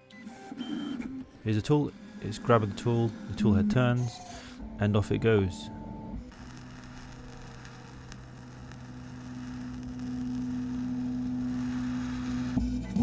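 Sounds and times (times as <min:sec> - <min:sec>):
printer motors humming: 0:00.1 - 0:06.5.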